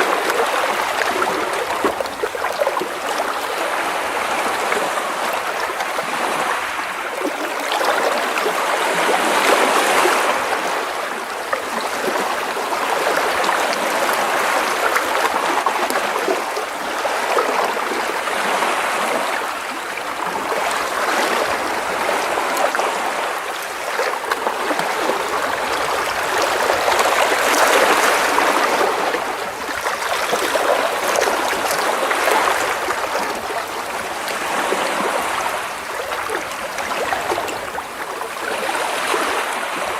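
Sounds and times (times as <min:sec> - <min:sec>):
waves lapping against rocks: 0:00.0 - 0:39.9
water trickling and gurgling: 0:19.2 - 0:39.8.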